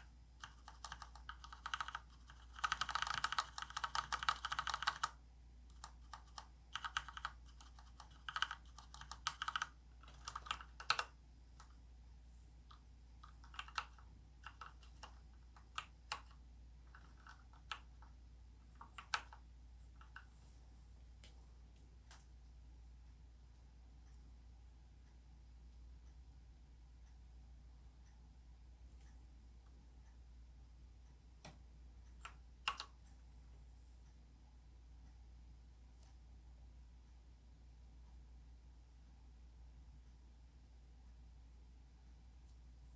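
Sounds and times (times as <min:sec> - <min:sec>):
mechanical keyboard typing: 0:00.0 - 0:11.7, 0:13.2 - 0:18.1, 0:18.7 - 0:19.4, 0:20.0 - 0:20.3, 0:32.2 - 0:32.9.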